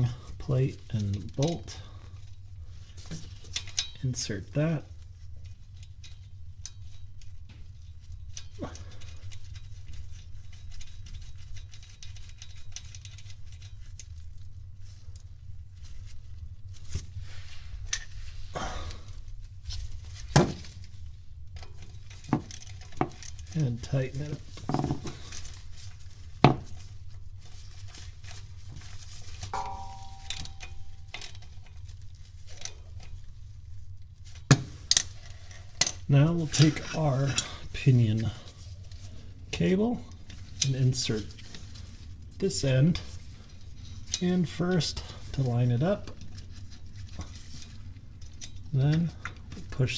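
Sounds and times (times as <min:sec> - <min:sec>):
steady low hum: 0:00.0 - 0:49.9
brief metallic ring: 0:29.6 - 0:31.2.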